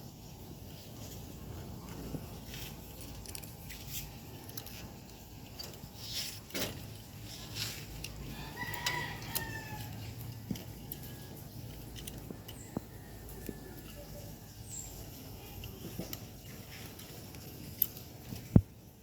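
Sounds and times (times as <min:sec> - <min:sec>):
rooster crowing: 0:08.2 - 0:11.5.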